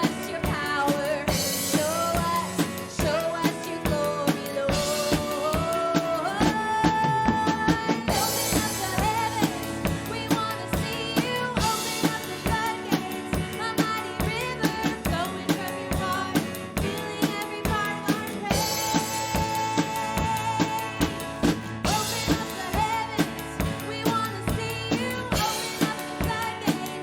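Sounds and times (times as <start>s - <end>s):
drum kit steady beat: 0.0s - 27.0s
live praise band music: 0.0s - 27.0s.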